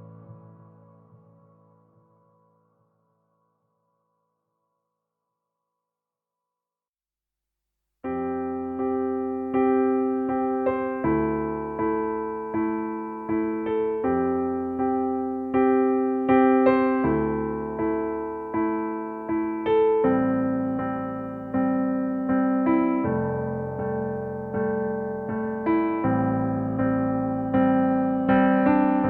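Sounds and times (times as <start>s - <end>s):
electric piano playing gentle chords: 8.0s - 29.0s.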